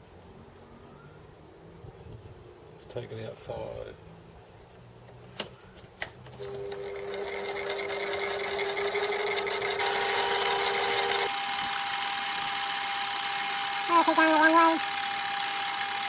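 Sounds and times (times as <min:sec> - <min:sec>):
metal lathe whining: 0:06.6 - 0:16.0.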